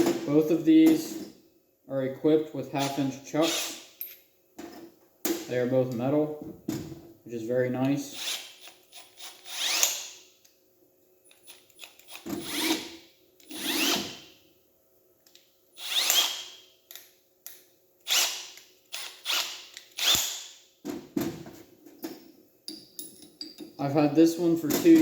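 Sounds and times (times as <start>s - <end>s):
drill chuck ratcheting: 8.1s - 10.2s, 11.3s - 14.2s, 15.8s - 16.6s, 18.1s - 20.5s
drill rising whine: 15.8s - 16.4s.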